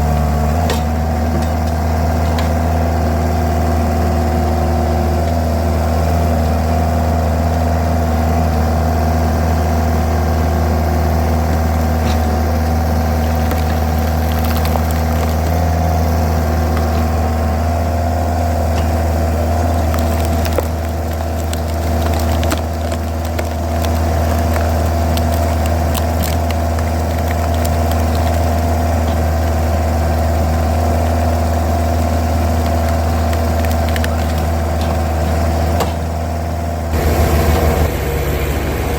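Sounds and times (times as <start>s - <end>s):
hydraulic whine: 0.0s - 38.9s
skid steer engine running: 0.0s - 38.9s
wood splitting cracks and pops: 9.5s - 17.6s, 18.7s - 36.2s.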